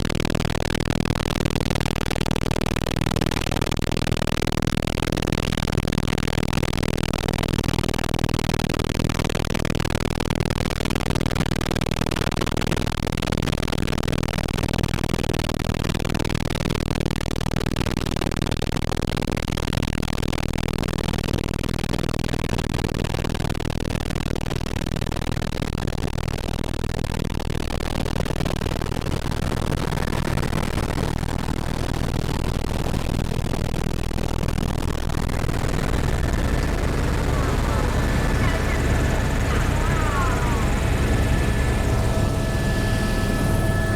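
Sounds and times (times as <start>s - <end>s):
low hum: 34.8s - 43.9s
helicopter engine and rotor: 35.2s - 43.9s.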